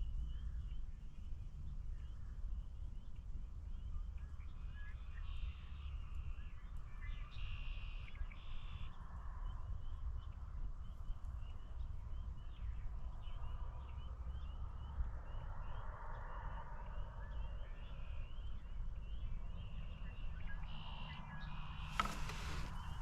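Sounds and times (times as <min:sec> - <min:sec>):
rustling: 0:21.8 - 0:23.0.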